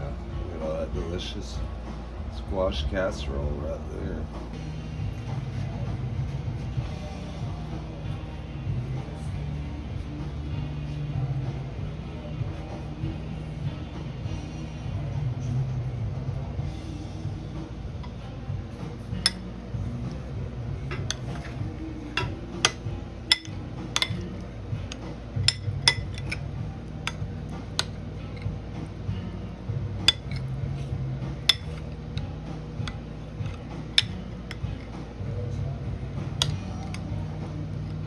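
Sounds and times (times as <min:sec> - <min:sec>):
utensils clinking on dishes: 0:19.1 - 0:19.5, 0:20.9 - 0:28.6, 0:30.1 - 0:30.9, 0:31.5 - 0:32.0, 0:32.9 - 0:35.0.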